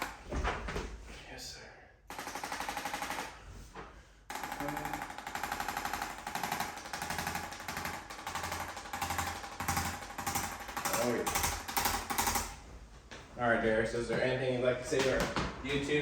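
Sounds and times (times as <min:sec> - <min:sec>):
percussion massager rattling: 0:00.0 - 0:00.4, 0:02.1 - 0:12.7.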